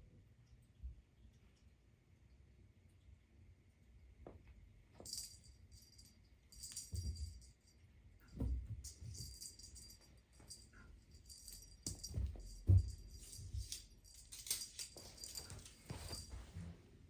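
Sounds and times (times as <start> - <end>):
cat toy jingling and rattling: 5.0 - 16.5.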